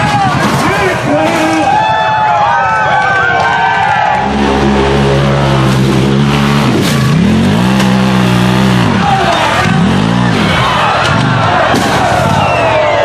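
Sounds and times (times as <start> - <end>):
off-road vehicle engine revving: 4.0 - 12.8.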